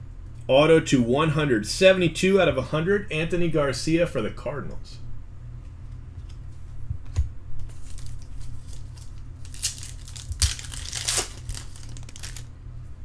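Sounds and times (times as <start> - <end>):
wrapper crinkling and tearing: 7.7 - 12.5.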